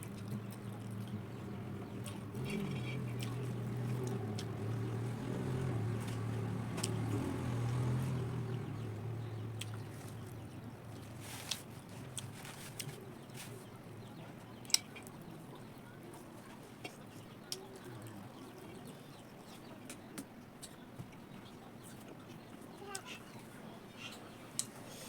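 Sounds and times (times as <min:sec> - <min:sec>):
low motor drone: 0:00.0 - 0:11.1.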